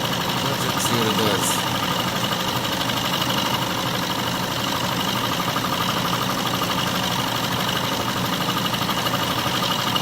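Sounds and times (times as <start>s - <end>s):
metal lathe running with chatter: 0.0s - 10.0s.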